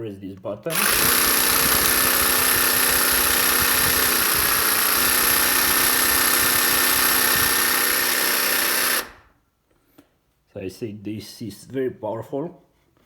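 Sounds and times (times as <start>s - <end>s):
jigsaw motor hum with whine: 0.7s - 9.3s.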